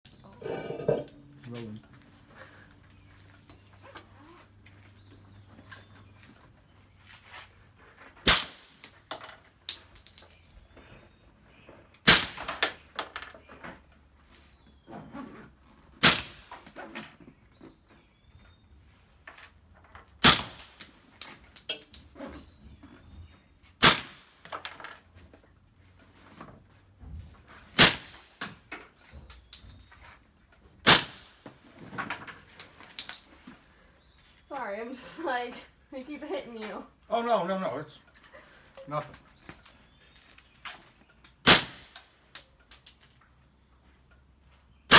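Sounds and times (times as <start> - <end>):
metallic clinks: 8.8 - 10.8, 20.8 - 22.4, 28.4 - 30.2, 32.1 - 34.1, 41.9 - 43.2
suppressed pistol shots: 41.5 - 41.9.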